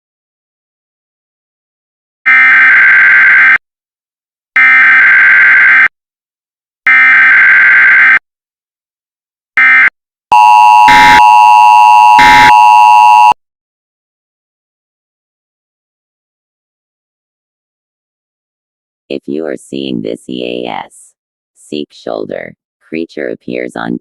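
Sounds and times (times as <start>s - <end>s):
two-tone attention signal: 9.6s - 13.4s.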